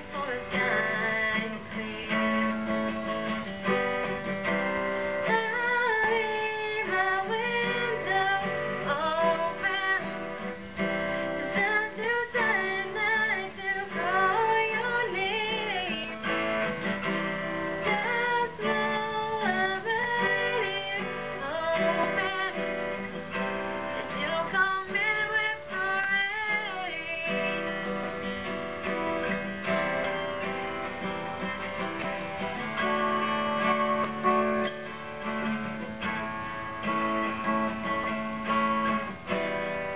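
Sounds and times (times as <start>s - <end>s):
woman singing: 0.0s - 28.3s
strummed acoustic guitar: 0.0s - 39.9s.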